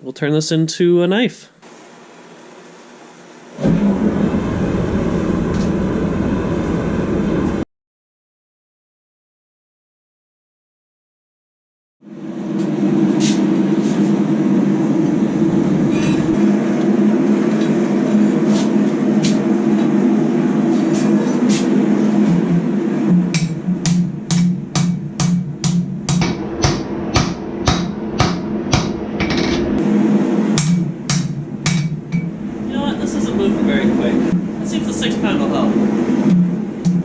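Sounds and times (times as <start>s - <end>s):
forge roaring: 3.5s - 7.6s, 12.1s - 24.3s, 32.3s - 37.0s
hammer striking steel on anvil: 23.3s - 29.8s, 30.6s - 32.4s.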